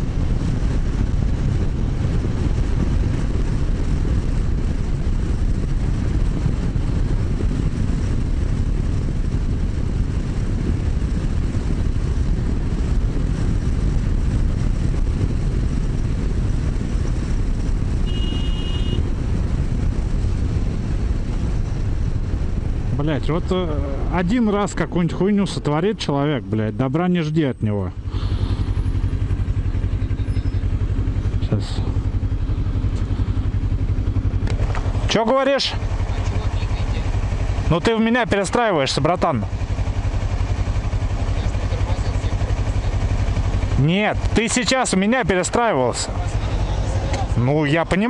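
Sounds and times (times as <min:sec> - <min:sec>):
motorcycle engine: 0:00.0 - 0:26.7, 0:27.5 - 0:48.0
wind rushing: 0:00.0 - 0:26.8
road noise: 0:00.0 - 0:48.0.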